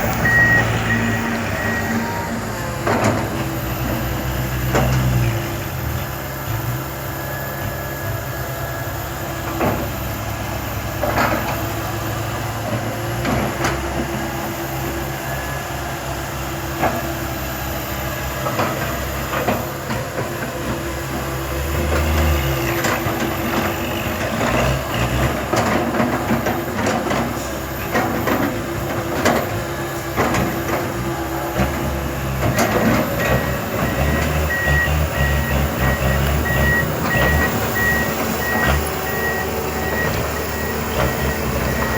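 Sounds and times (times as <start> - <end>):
reversing alarm beeping: 0.0 - 5.8, 31.9 - 41.9
excavator engine and hydraulics: 0.0 - 41.9.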